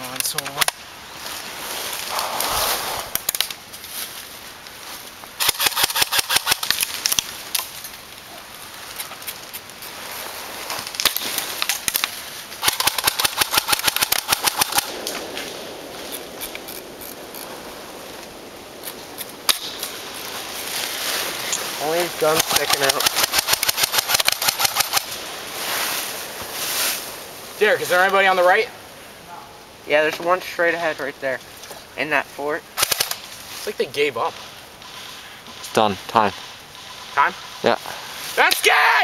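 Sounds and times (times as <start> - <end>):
airsoft gun firing: 5.4 - 6.9, 12.6 - 15.2, 22.3 - 25.1, 32.8 - 33.2.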